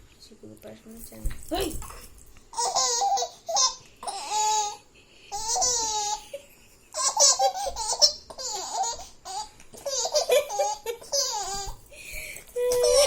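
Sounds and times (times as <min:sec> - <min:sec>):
baby laughing: 0:02.5 - 0:11.8, 0:12.6 - 0:13.0.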